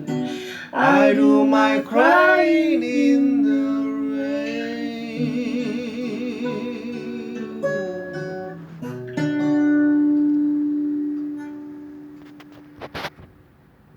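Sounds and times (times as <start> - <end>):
person singing with vibrato: 0.0 - 8.7
acoustic guitar strumming: 0.0 - 13.3.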